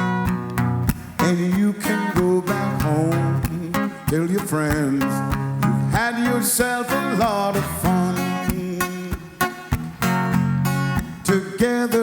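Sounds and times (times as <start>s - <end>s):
acoustic guitar strumming chords: 0.0s - 12.0s.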